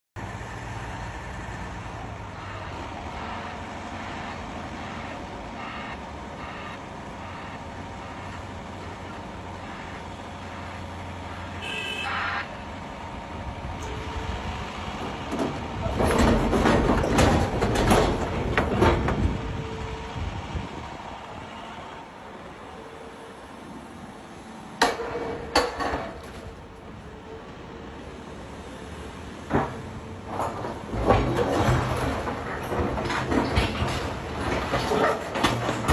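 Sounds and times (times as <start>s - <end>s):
heavy machinery running: 0.2s - 35.9s
clattering and crashing impacts: 14.9s - 19.7s, 24.8s - 26.7s, 29.5s - 35.9s.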